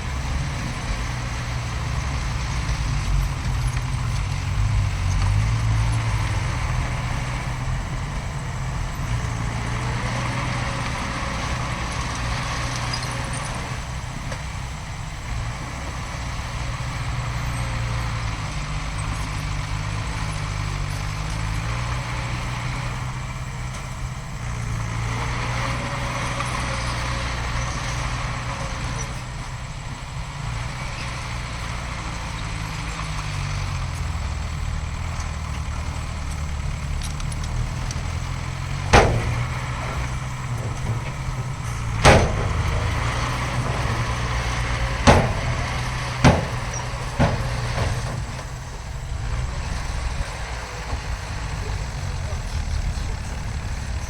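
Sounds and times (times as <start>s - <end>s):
diesel machinery droning: 0.0s - 54.0s
sharp bangs: 36.8s - 52.3s.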